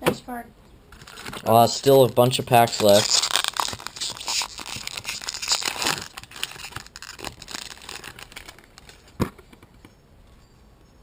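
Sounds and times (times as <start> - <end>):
card pack wrapper crinkling: 1.0 - 9.2.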